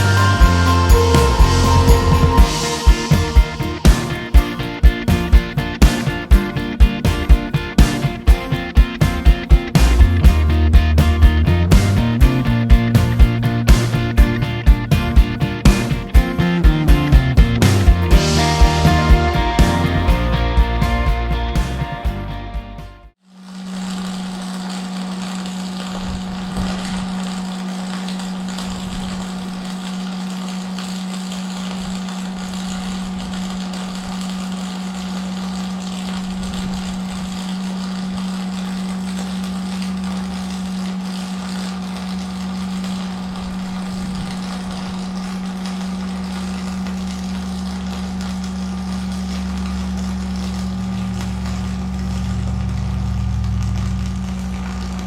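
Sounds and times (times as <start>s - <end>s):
engine idling: 24.1s - 55.0s.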